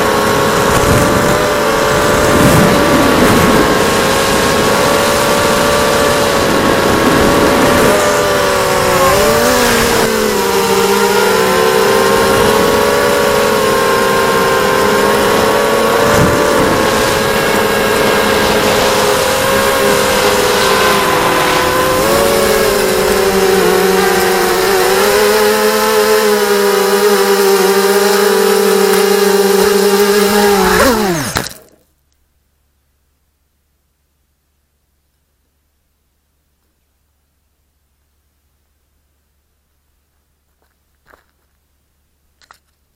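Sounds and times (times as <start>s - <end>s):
quadcopter motors buzzing: 0.0s - 31.8s.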